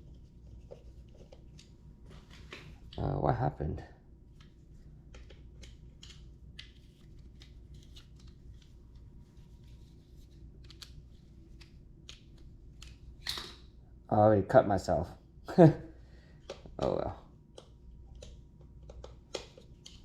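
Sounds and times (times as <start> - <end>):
hands and tools clicking and scraping: 0.0 - 3.0, 4.3 - 13.5, 16.4 - 20.0.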